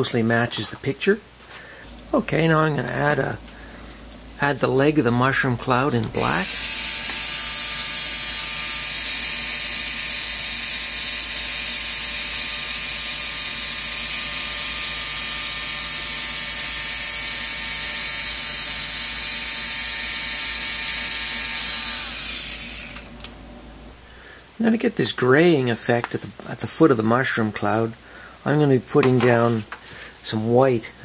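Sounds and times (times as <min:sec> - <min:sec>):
small motor whirring: 0:06.2 - 0:24.0.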